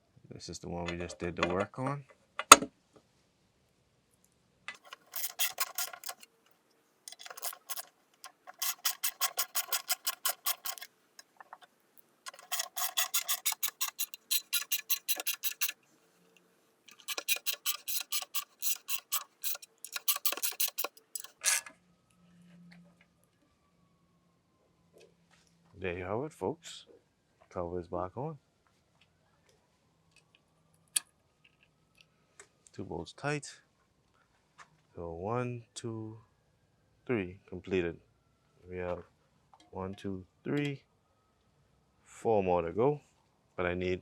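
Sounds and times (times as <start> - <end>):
ratchet wrench clicking: 4.8 - 6.2, 7.1 - 10.9, 12.3 - 15.8, 16.9 - 21.4.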